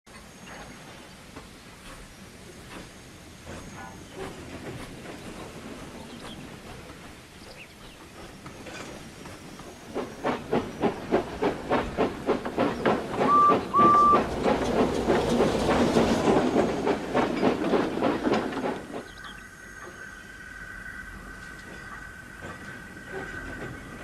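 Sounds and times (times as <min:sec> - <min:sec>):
steam locomotive chuffs: 0:00.1 - 0:24.0
steam hiss: 0:00.8 - 0:24.0
whistle toots: 0:13.2 - 0:14.3.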